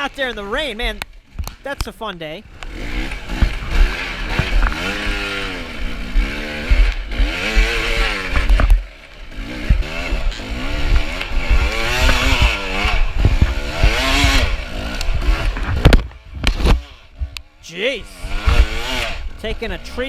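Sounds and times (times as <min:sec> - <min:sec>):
dirt bike engine revving: 0:00.0 - 0:20.0.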